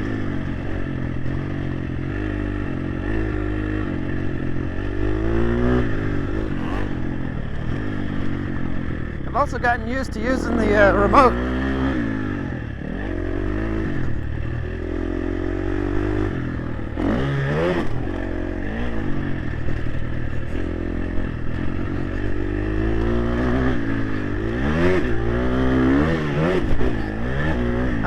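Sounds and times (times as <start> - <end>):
motocross bike engine revving: 4.8 - 20.6, 21.8 - 28.0.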